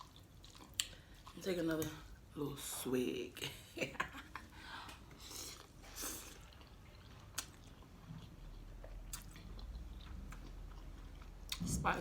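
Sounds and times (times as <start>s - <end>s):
wet chewing: 0.0s - 2.3s, 4.9s - 12.0s.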